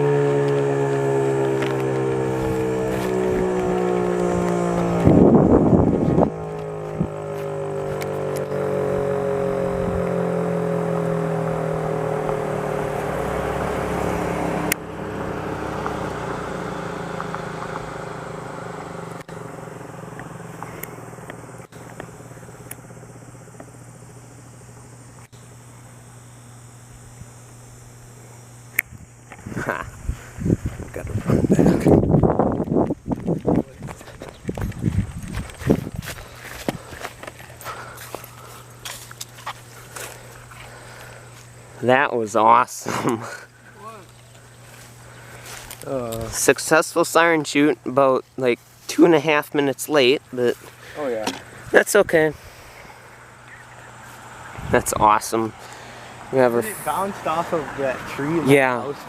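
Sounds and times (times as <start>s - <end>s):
rumble on the microphone: 0.0s - 14.7s, 18.7s - 46.5s
warning siren winding down: 0.0s - 27.2s.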